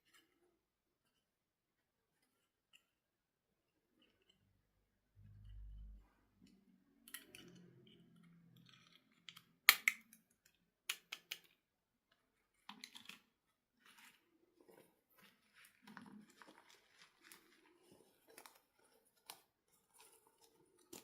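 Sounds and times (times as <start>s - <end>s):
plastic pieces clicking: 7.0s - 11.6s.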